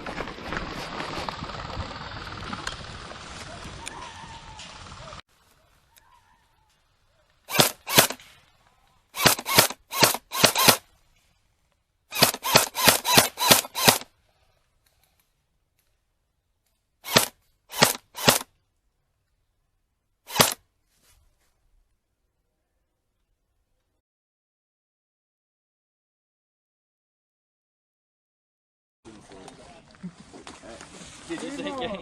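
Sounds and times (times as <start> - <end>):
single gunshots: 9.2 - 10.8.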